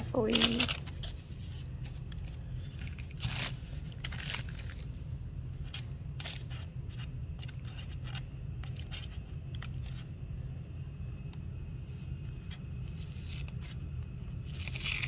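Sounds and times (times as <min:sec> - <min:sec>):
craft supplies scraping and crackling: 0:00.0 - 0:04.9
low steady hum: 0:00.0 - 0:15.0.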